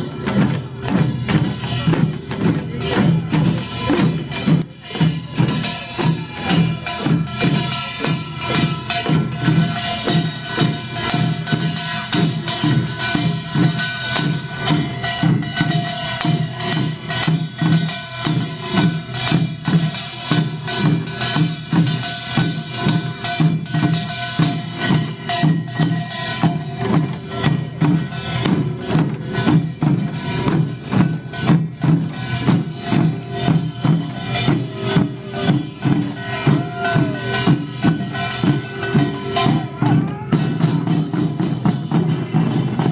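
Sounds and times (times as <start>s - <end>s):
drums beating fast rhythm: 0.0s - 42.9s
small hand gongs: 0.0s - 42.9s
held ringing tones: 32.4s - 41.1s.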